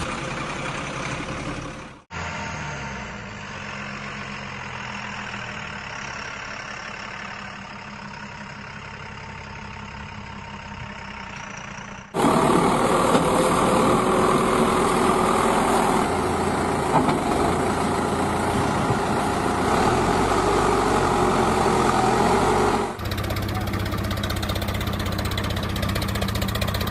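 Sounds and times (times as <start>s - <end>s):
diesel engine idling: 0.0s - 26.9s
heavy machinery working: 12.2s - 26.9s.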